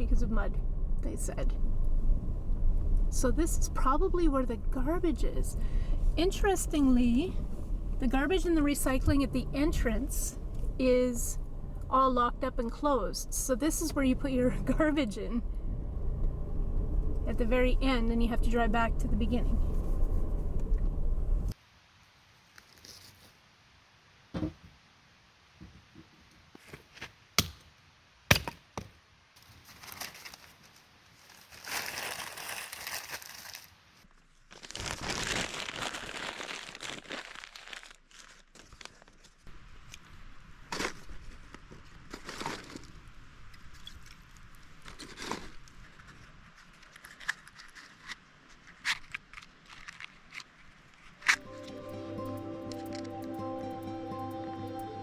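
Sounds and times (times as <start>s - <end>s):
crinkling rustling: 29.4s - 39.5s, 40.6s - 51.4s.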